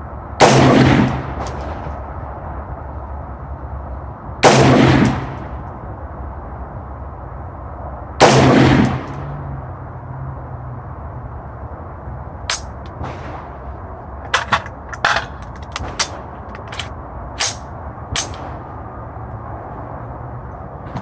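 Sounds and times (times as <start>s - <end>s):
steady low rumble: 10.9s - 21.0s.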